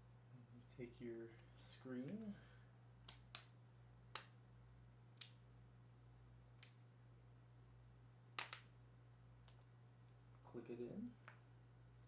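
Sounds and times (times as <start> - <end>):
faint low hum: 0.0 - 12.0
small sharp clicks and taps: 8.4 - 8.7, 9.4 - 10.2.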